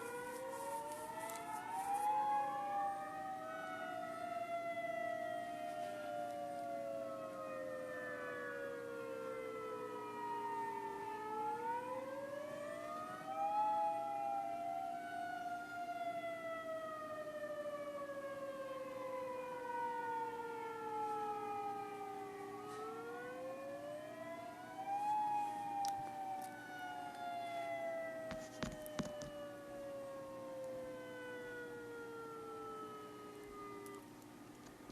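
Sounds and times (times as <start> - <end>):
tornado sirens wailing: 0.0 - 34.9.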